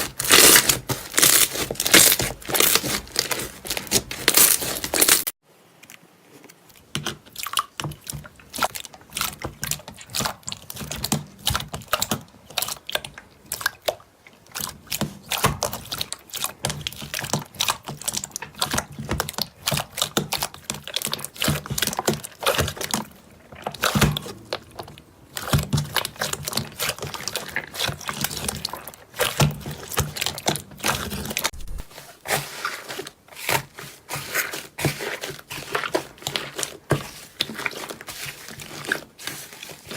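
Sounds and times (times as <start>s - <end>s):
slime squished by hand: 0.0s - 5.3s, 14.5s - 39.9s.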